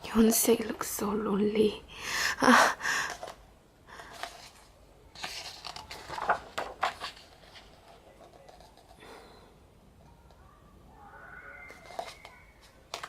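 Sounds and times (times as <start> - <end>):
book pages turning: 4.0 - 9.0, 11.6 - 13.0.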